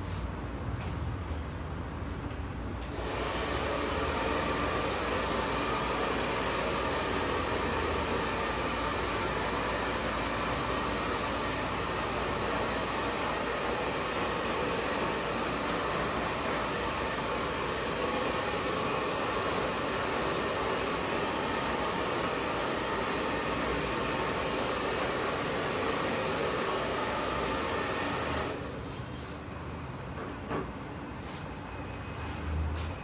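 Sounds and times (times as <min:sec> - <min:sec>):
electric blower rushing air: 0:02.9 - 0:28.9.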